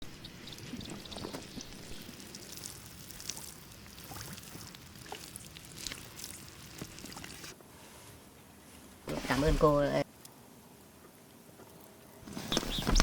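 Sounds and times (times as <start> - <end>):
small ticks and drips: 0.2 - 7.6.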